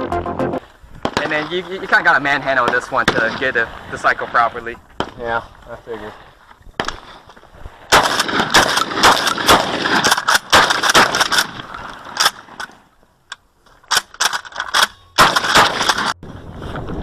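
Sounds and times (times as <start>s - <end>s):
shotgun shots: 7.9s - 12.7s, 13.9s - 16.2s.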